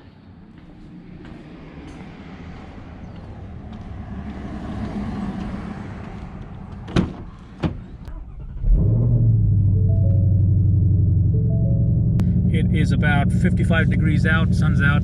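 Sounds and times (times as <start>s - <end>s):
car driving: 0.4s - 15.0s
loud low drone: 8.6s - 15.0s.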